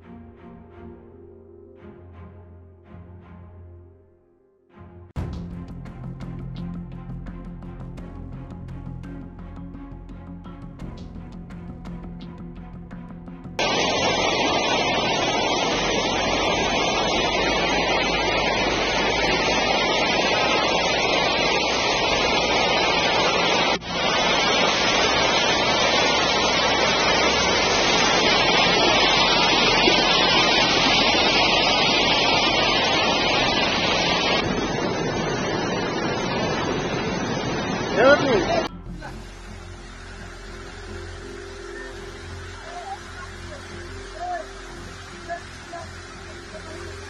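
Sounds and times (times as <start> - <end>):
floodwater rushing: 13.6 - 47.0.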